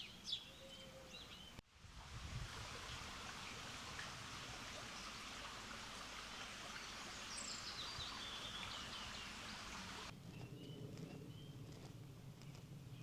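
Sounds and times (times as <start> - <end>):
songbird chirping: 0.0 - 1.6, 6.4 - 13.0
rushing hiss of outdoor noise: 1.6 - 10.2.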